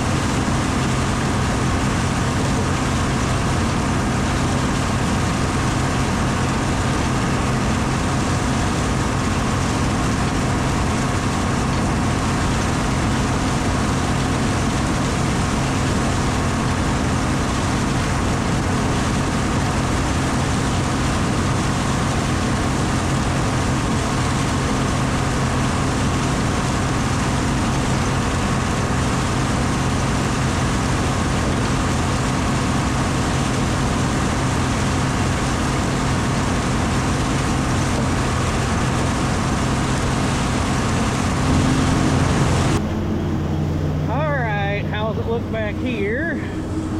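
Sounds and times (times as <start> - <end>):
diesel engine humming: 0.0 - 46.9.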